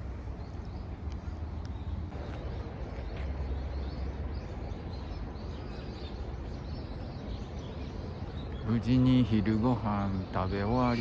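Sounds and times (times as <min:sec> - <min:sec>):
steady low rumble: 0:00.0 - 0:07.3
birds chirping faintly: 0:00.0 - 0:11.0.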